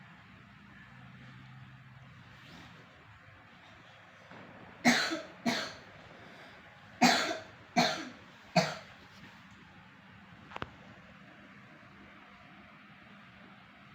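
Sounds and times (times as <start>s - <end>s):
cat coughing: 4.8s - 5.9s, 7.0s - 8.9s.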